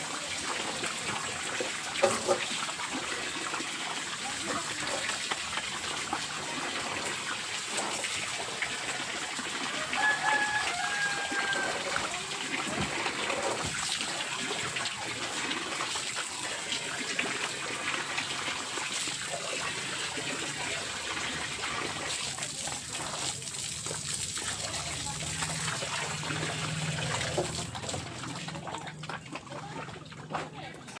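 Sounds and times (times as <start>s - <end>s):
rooster crowing: 9.7s - 12.2s.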